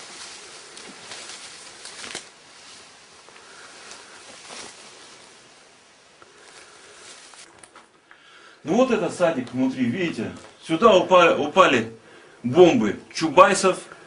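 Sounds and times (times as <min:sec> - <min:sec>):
clothing rustling: 0:00.0 - 0:08.0
crunching footsteps: 0:00.0 - 0:08.0, 0:09.0 - 0:11.0.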